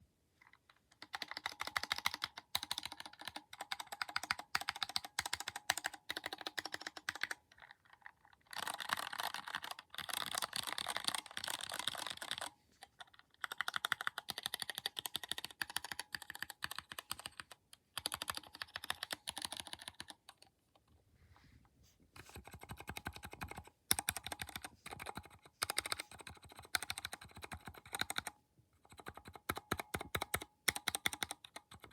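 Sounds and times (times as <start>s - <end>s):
keyboard typing clicks: 1.0s - 7.4s, 13.4s - 20.4s, 22.2s - 31.9s.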